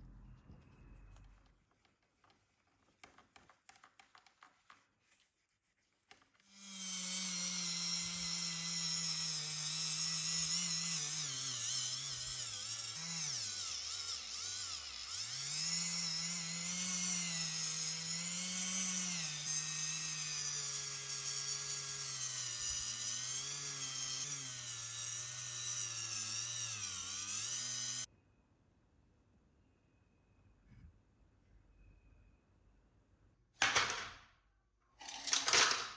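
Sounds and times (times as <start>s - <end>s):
electric power tool motor running: 6.5s - 28.1s.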